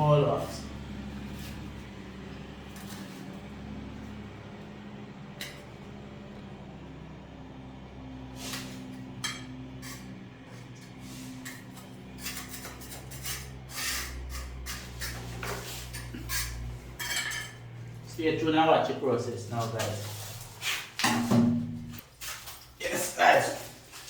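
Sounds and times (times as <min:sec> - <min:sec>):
metal tool scraping and clinking: 0:10.8 - 0:18.2.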